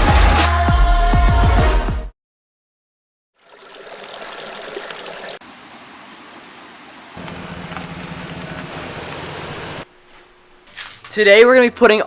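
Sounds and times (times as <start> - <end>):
steady rushing hiss: 7.2 - 9.9.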